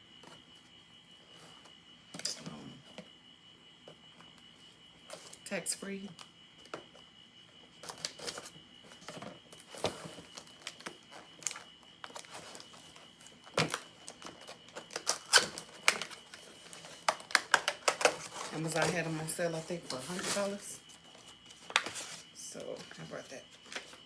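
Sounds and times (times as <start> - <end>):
faint steady high tone: 0.0 - 24.0
cardboard box being handled: 18.2 - 22.3.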